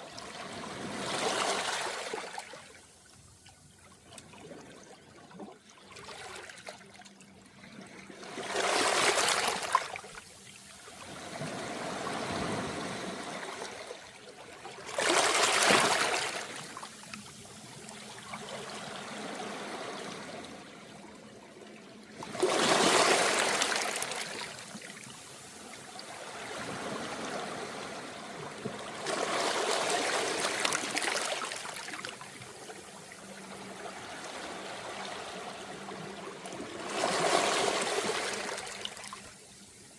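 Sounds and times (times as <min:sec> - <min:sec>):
waves washing onto pebbles: 0:08.4 - 0:10.0, 0:14.8 - 0:17.0, 0:22.2 - 0:25.5, 0:28.9 - 0:32.3, 0:36.8 - 0:39.2.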